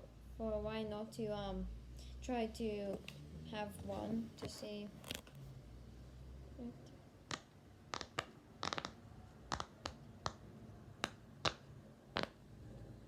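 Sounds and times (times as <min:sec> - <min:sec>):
fidget toy bubbles popping: 0:07.3 - 0:10.4.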